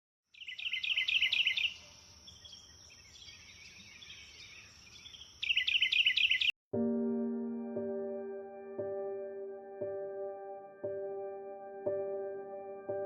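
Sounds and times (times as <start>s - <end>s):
faint bird chirps: 0.3s - 6.5s
songbird singing whistled notes: 0.3s - 6.5s.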